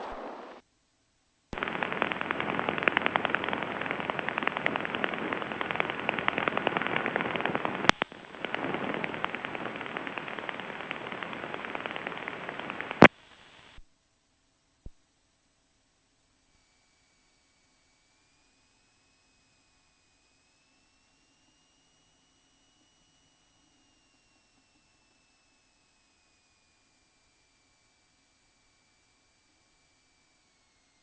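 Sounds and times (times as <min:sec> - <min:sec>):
crackling radio static: 0:00.0 - 0:00.6, 0:01.6 - 0:13.8.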